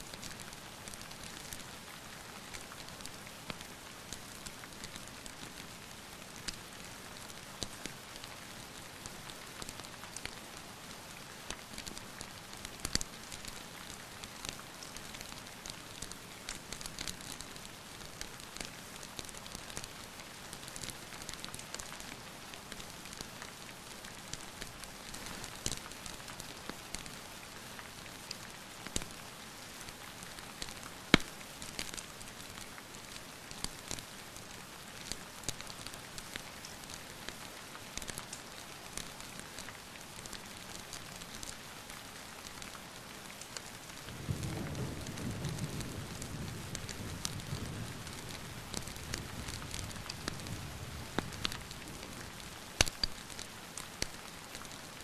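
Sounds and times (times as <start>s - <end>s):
rain hiss: 0.0s - 55.0s
wood fire crackling and popping: 12.6s - 20.0s, 30.6s - 37.0s, 39.0s - 41.5s, 43.4s - 54.8s.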